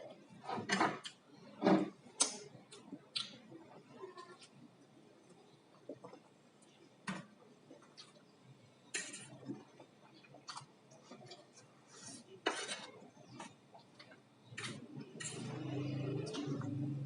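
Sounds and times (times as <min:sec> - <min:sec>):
utensils clinking on plate: 0:12.4 - 0:13.0, 0:14.6 - 0:16.5.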